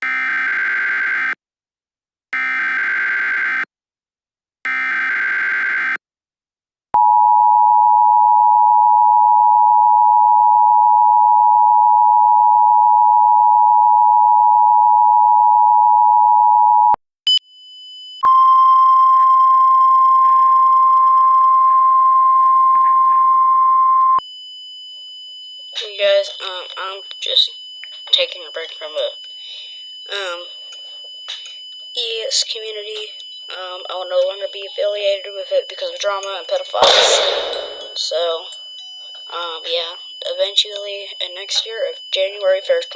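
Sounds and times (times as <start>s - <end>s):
two-tone alert signal: 28.1s - 40.0s
steady single tone: 36.8s - 38.9s.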